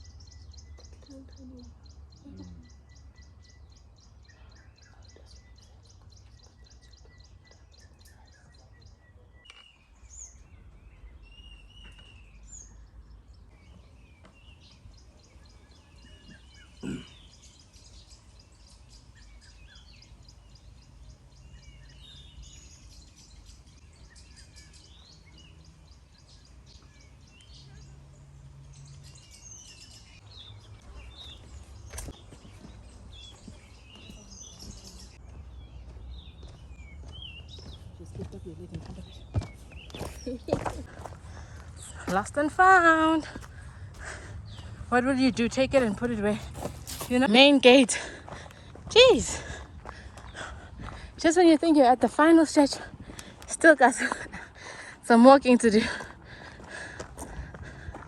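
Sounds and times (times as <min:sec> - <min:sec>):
birds calling and chirping: 0:00.0 - 0:58.0
low outdoor rumble: 0:30.0 - 0:51.2.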